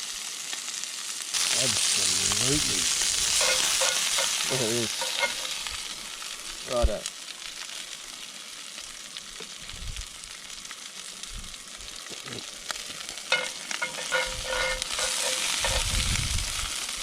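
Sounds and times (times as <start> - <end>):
meat sizzling in a frying pan: 0.0 - 17.0.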